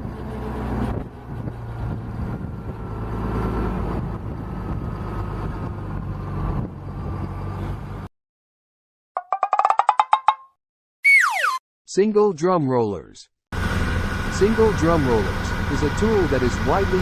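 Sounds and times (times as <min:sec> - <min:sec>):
diesel engine running: 0:00.0 - 0:08.1, 0:13.6 - 0:17.0.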